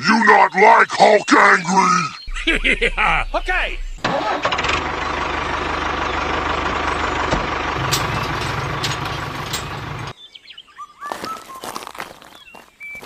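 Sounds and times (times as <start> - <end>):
engine idling: 2.3 - 10.1.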